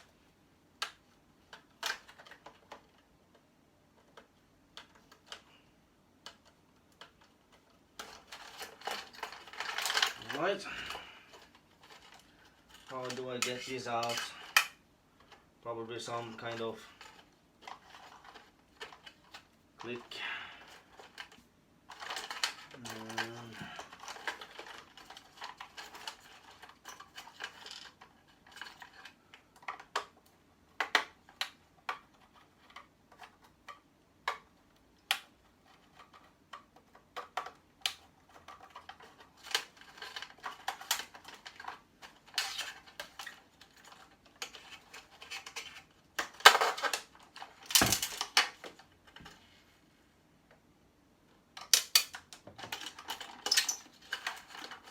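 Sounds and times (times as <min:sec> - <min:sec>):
metal parts and tools clinking: 0:51.6 - 0:54.9.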